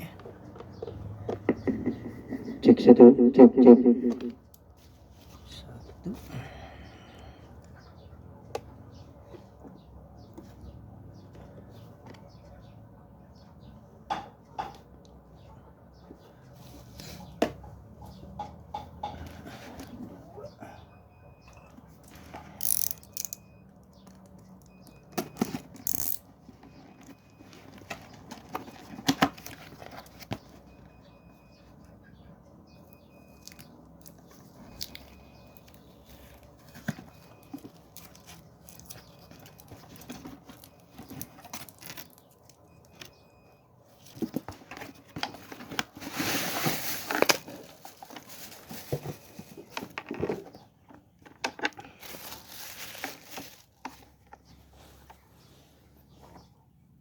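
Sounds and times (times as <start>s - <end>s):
wrapping rustling and tearing: 45.4s - 50.2s, 51.9s - 54.1s.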